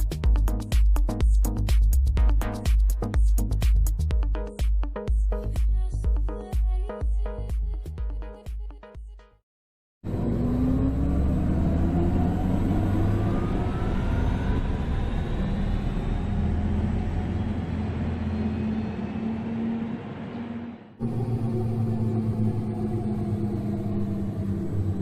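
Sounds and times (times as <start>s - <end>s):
electric car driving hum: 10.0s - 25.0s.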